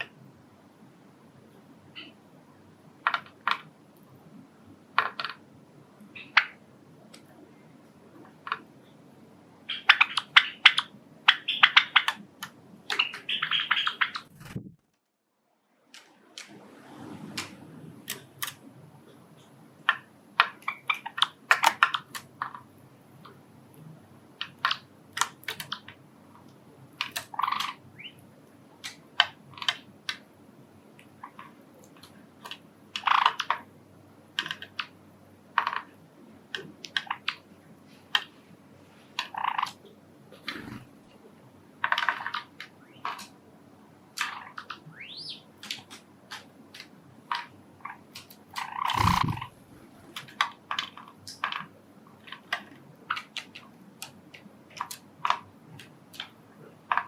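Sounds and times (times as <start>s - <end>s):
faint steady hum: 0.0s - 57.0s
sparrows chirping: 9.7s - 12.2s, 12.9s - 14.3s, 27.3s - 28.2s, 44.9s - 45.5s, 48.6s - 49.5s.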